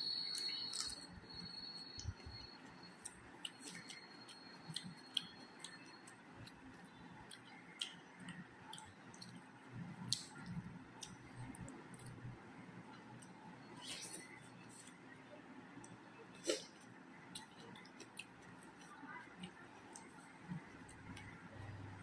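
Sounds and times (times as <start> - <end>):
mouth clicks and smacks chewing: 0.2 - 12.3, 15.8 - 21.8.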